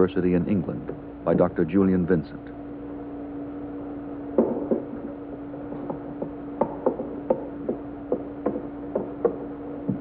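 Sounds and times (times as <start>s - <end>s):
steady low hum: 0.0s - 10.0s
light mechanical knocks and clicks: 4.4s - 10.0s.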